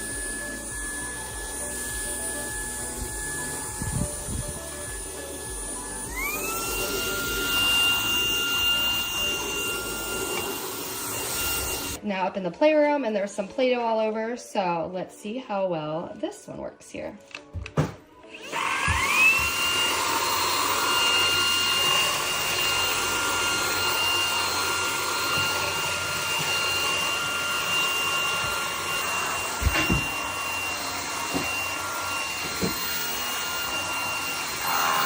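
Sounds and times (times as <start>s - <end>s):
stick vacuum whining: 0.0s - 12.0s, 17.4s - 35.0s.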